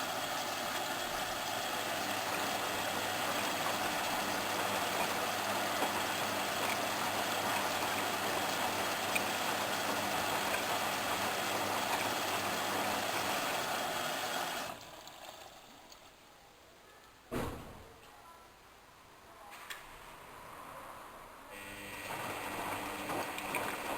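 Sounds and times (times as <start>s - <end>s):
washing machine running: 0.0s - 15.9s, 21.5s - 23.9s.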